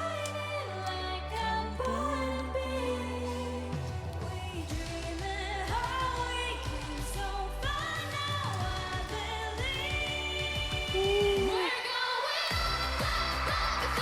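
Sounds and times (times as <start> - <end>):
backing track with bass line: 0.0 - 11.7, 12.5 - 14.0
woman singing pop ballad: 0.0 - 14.0.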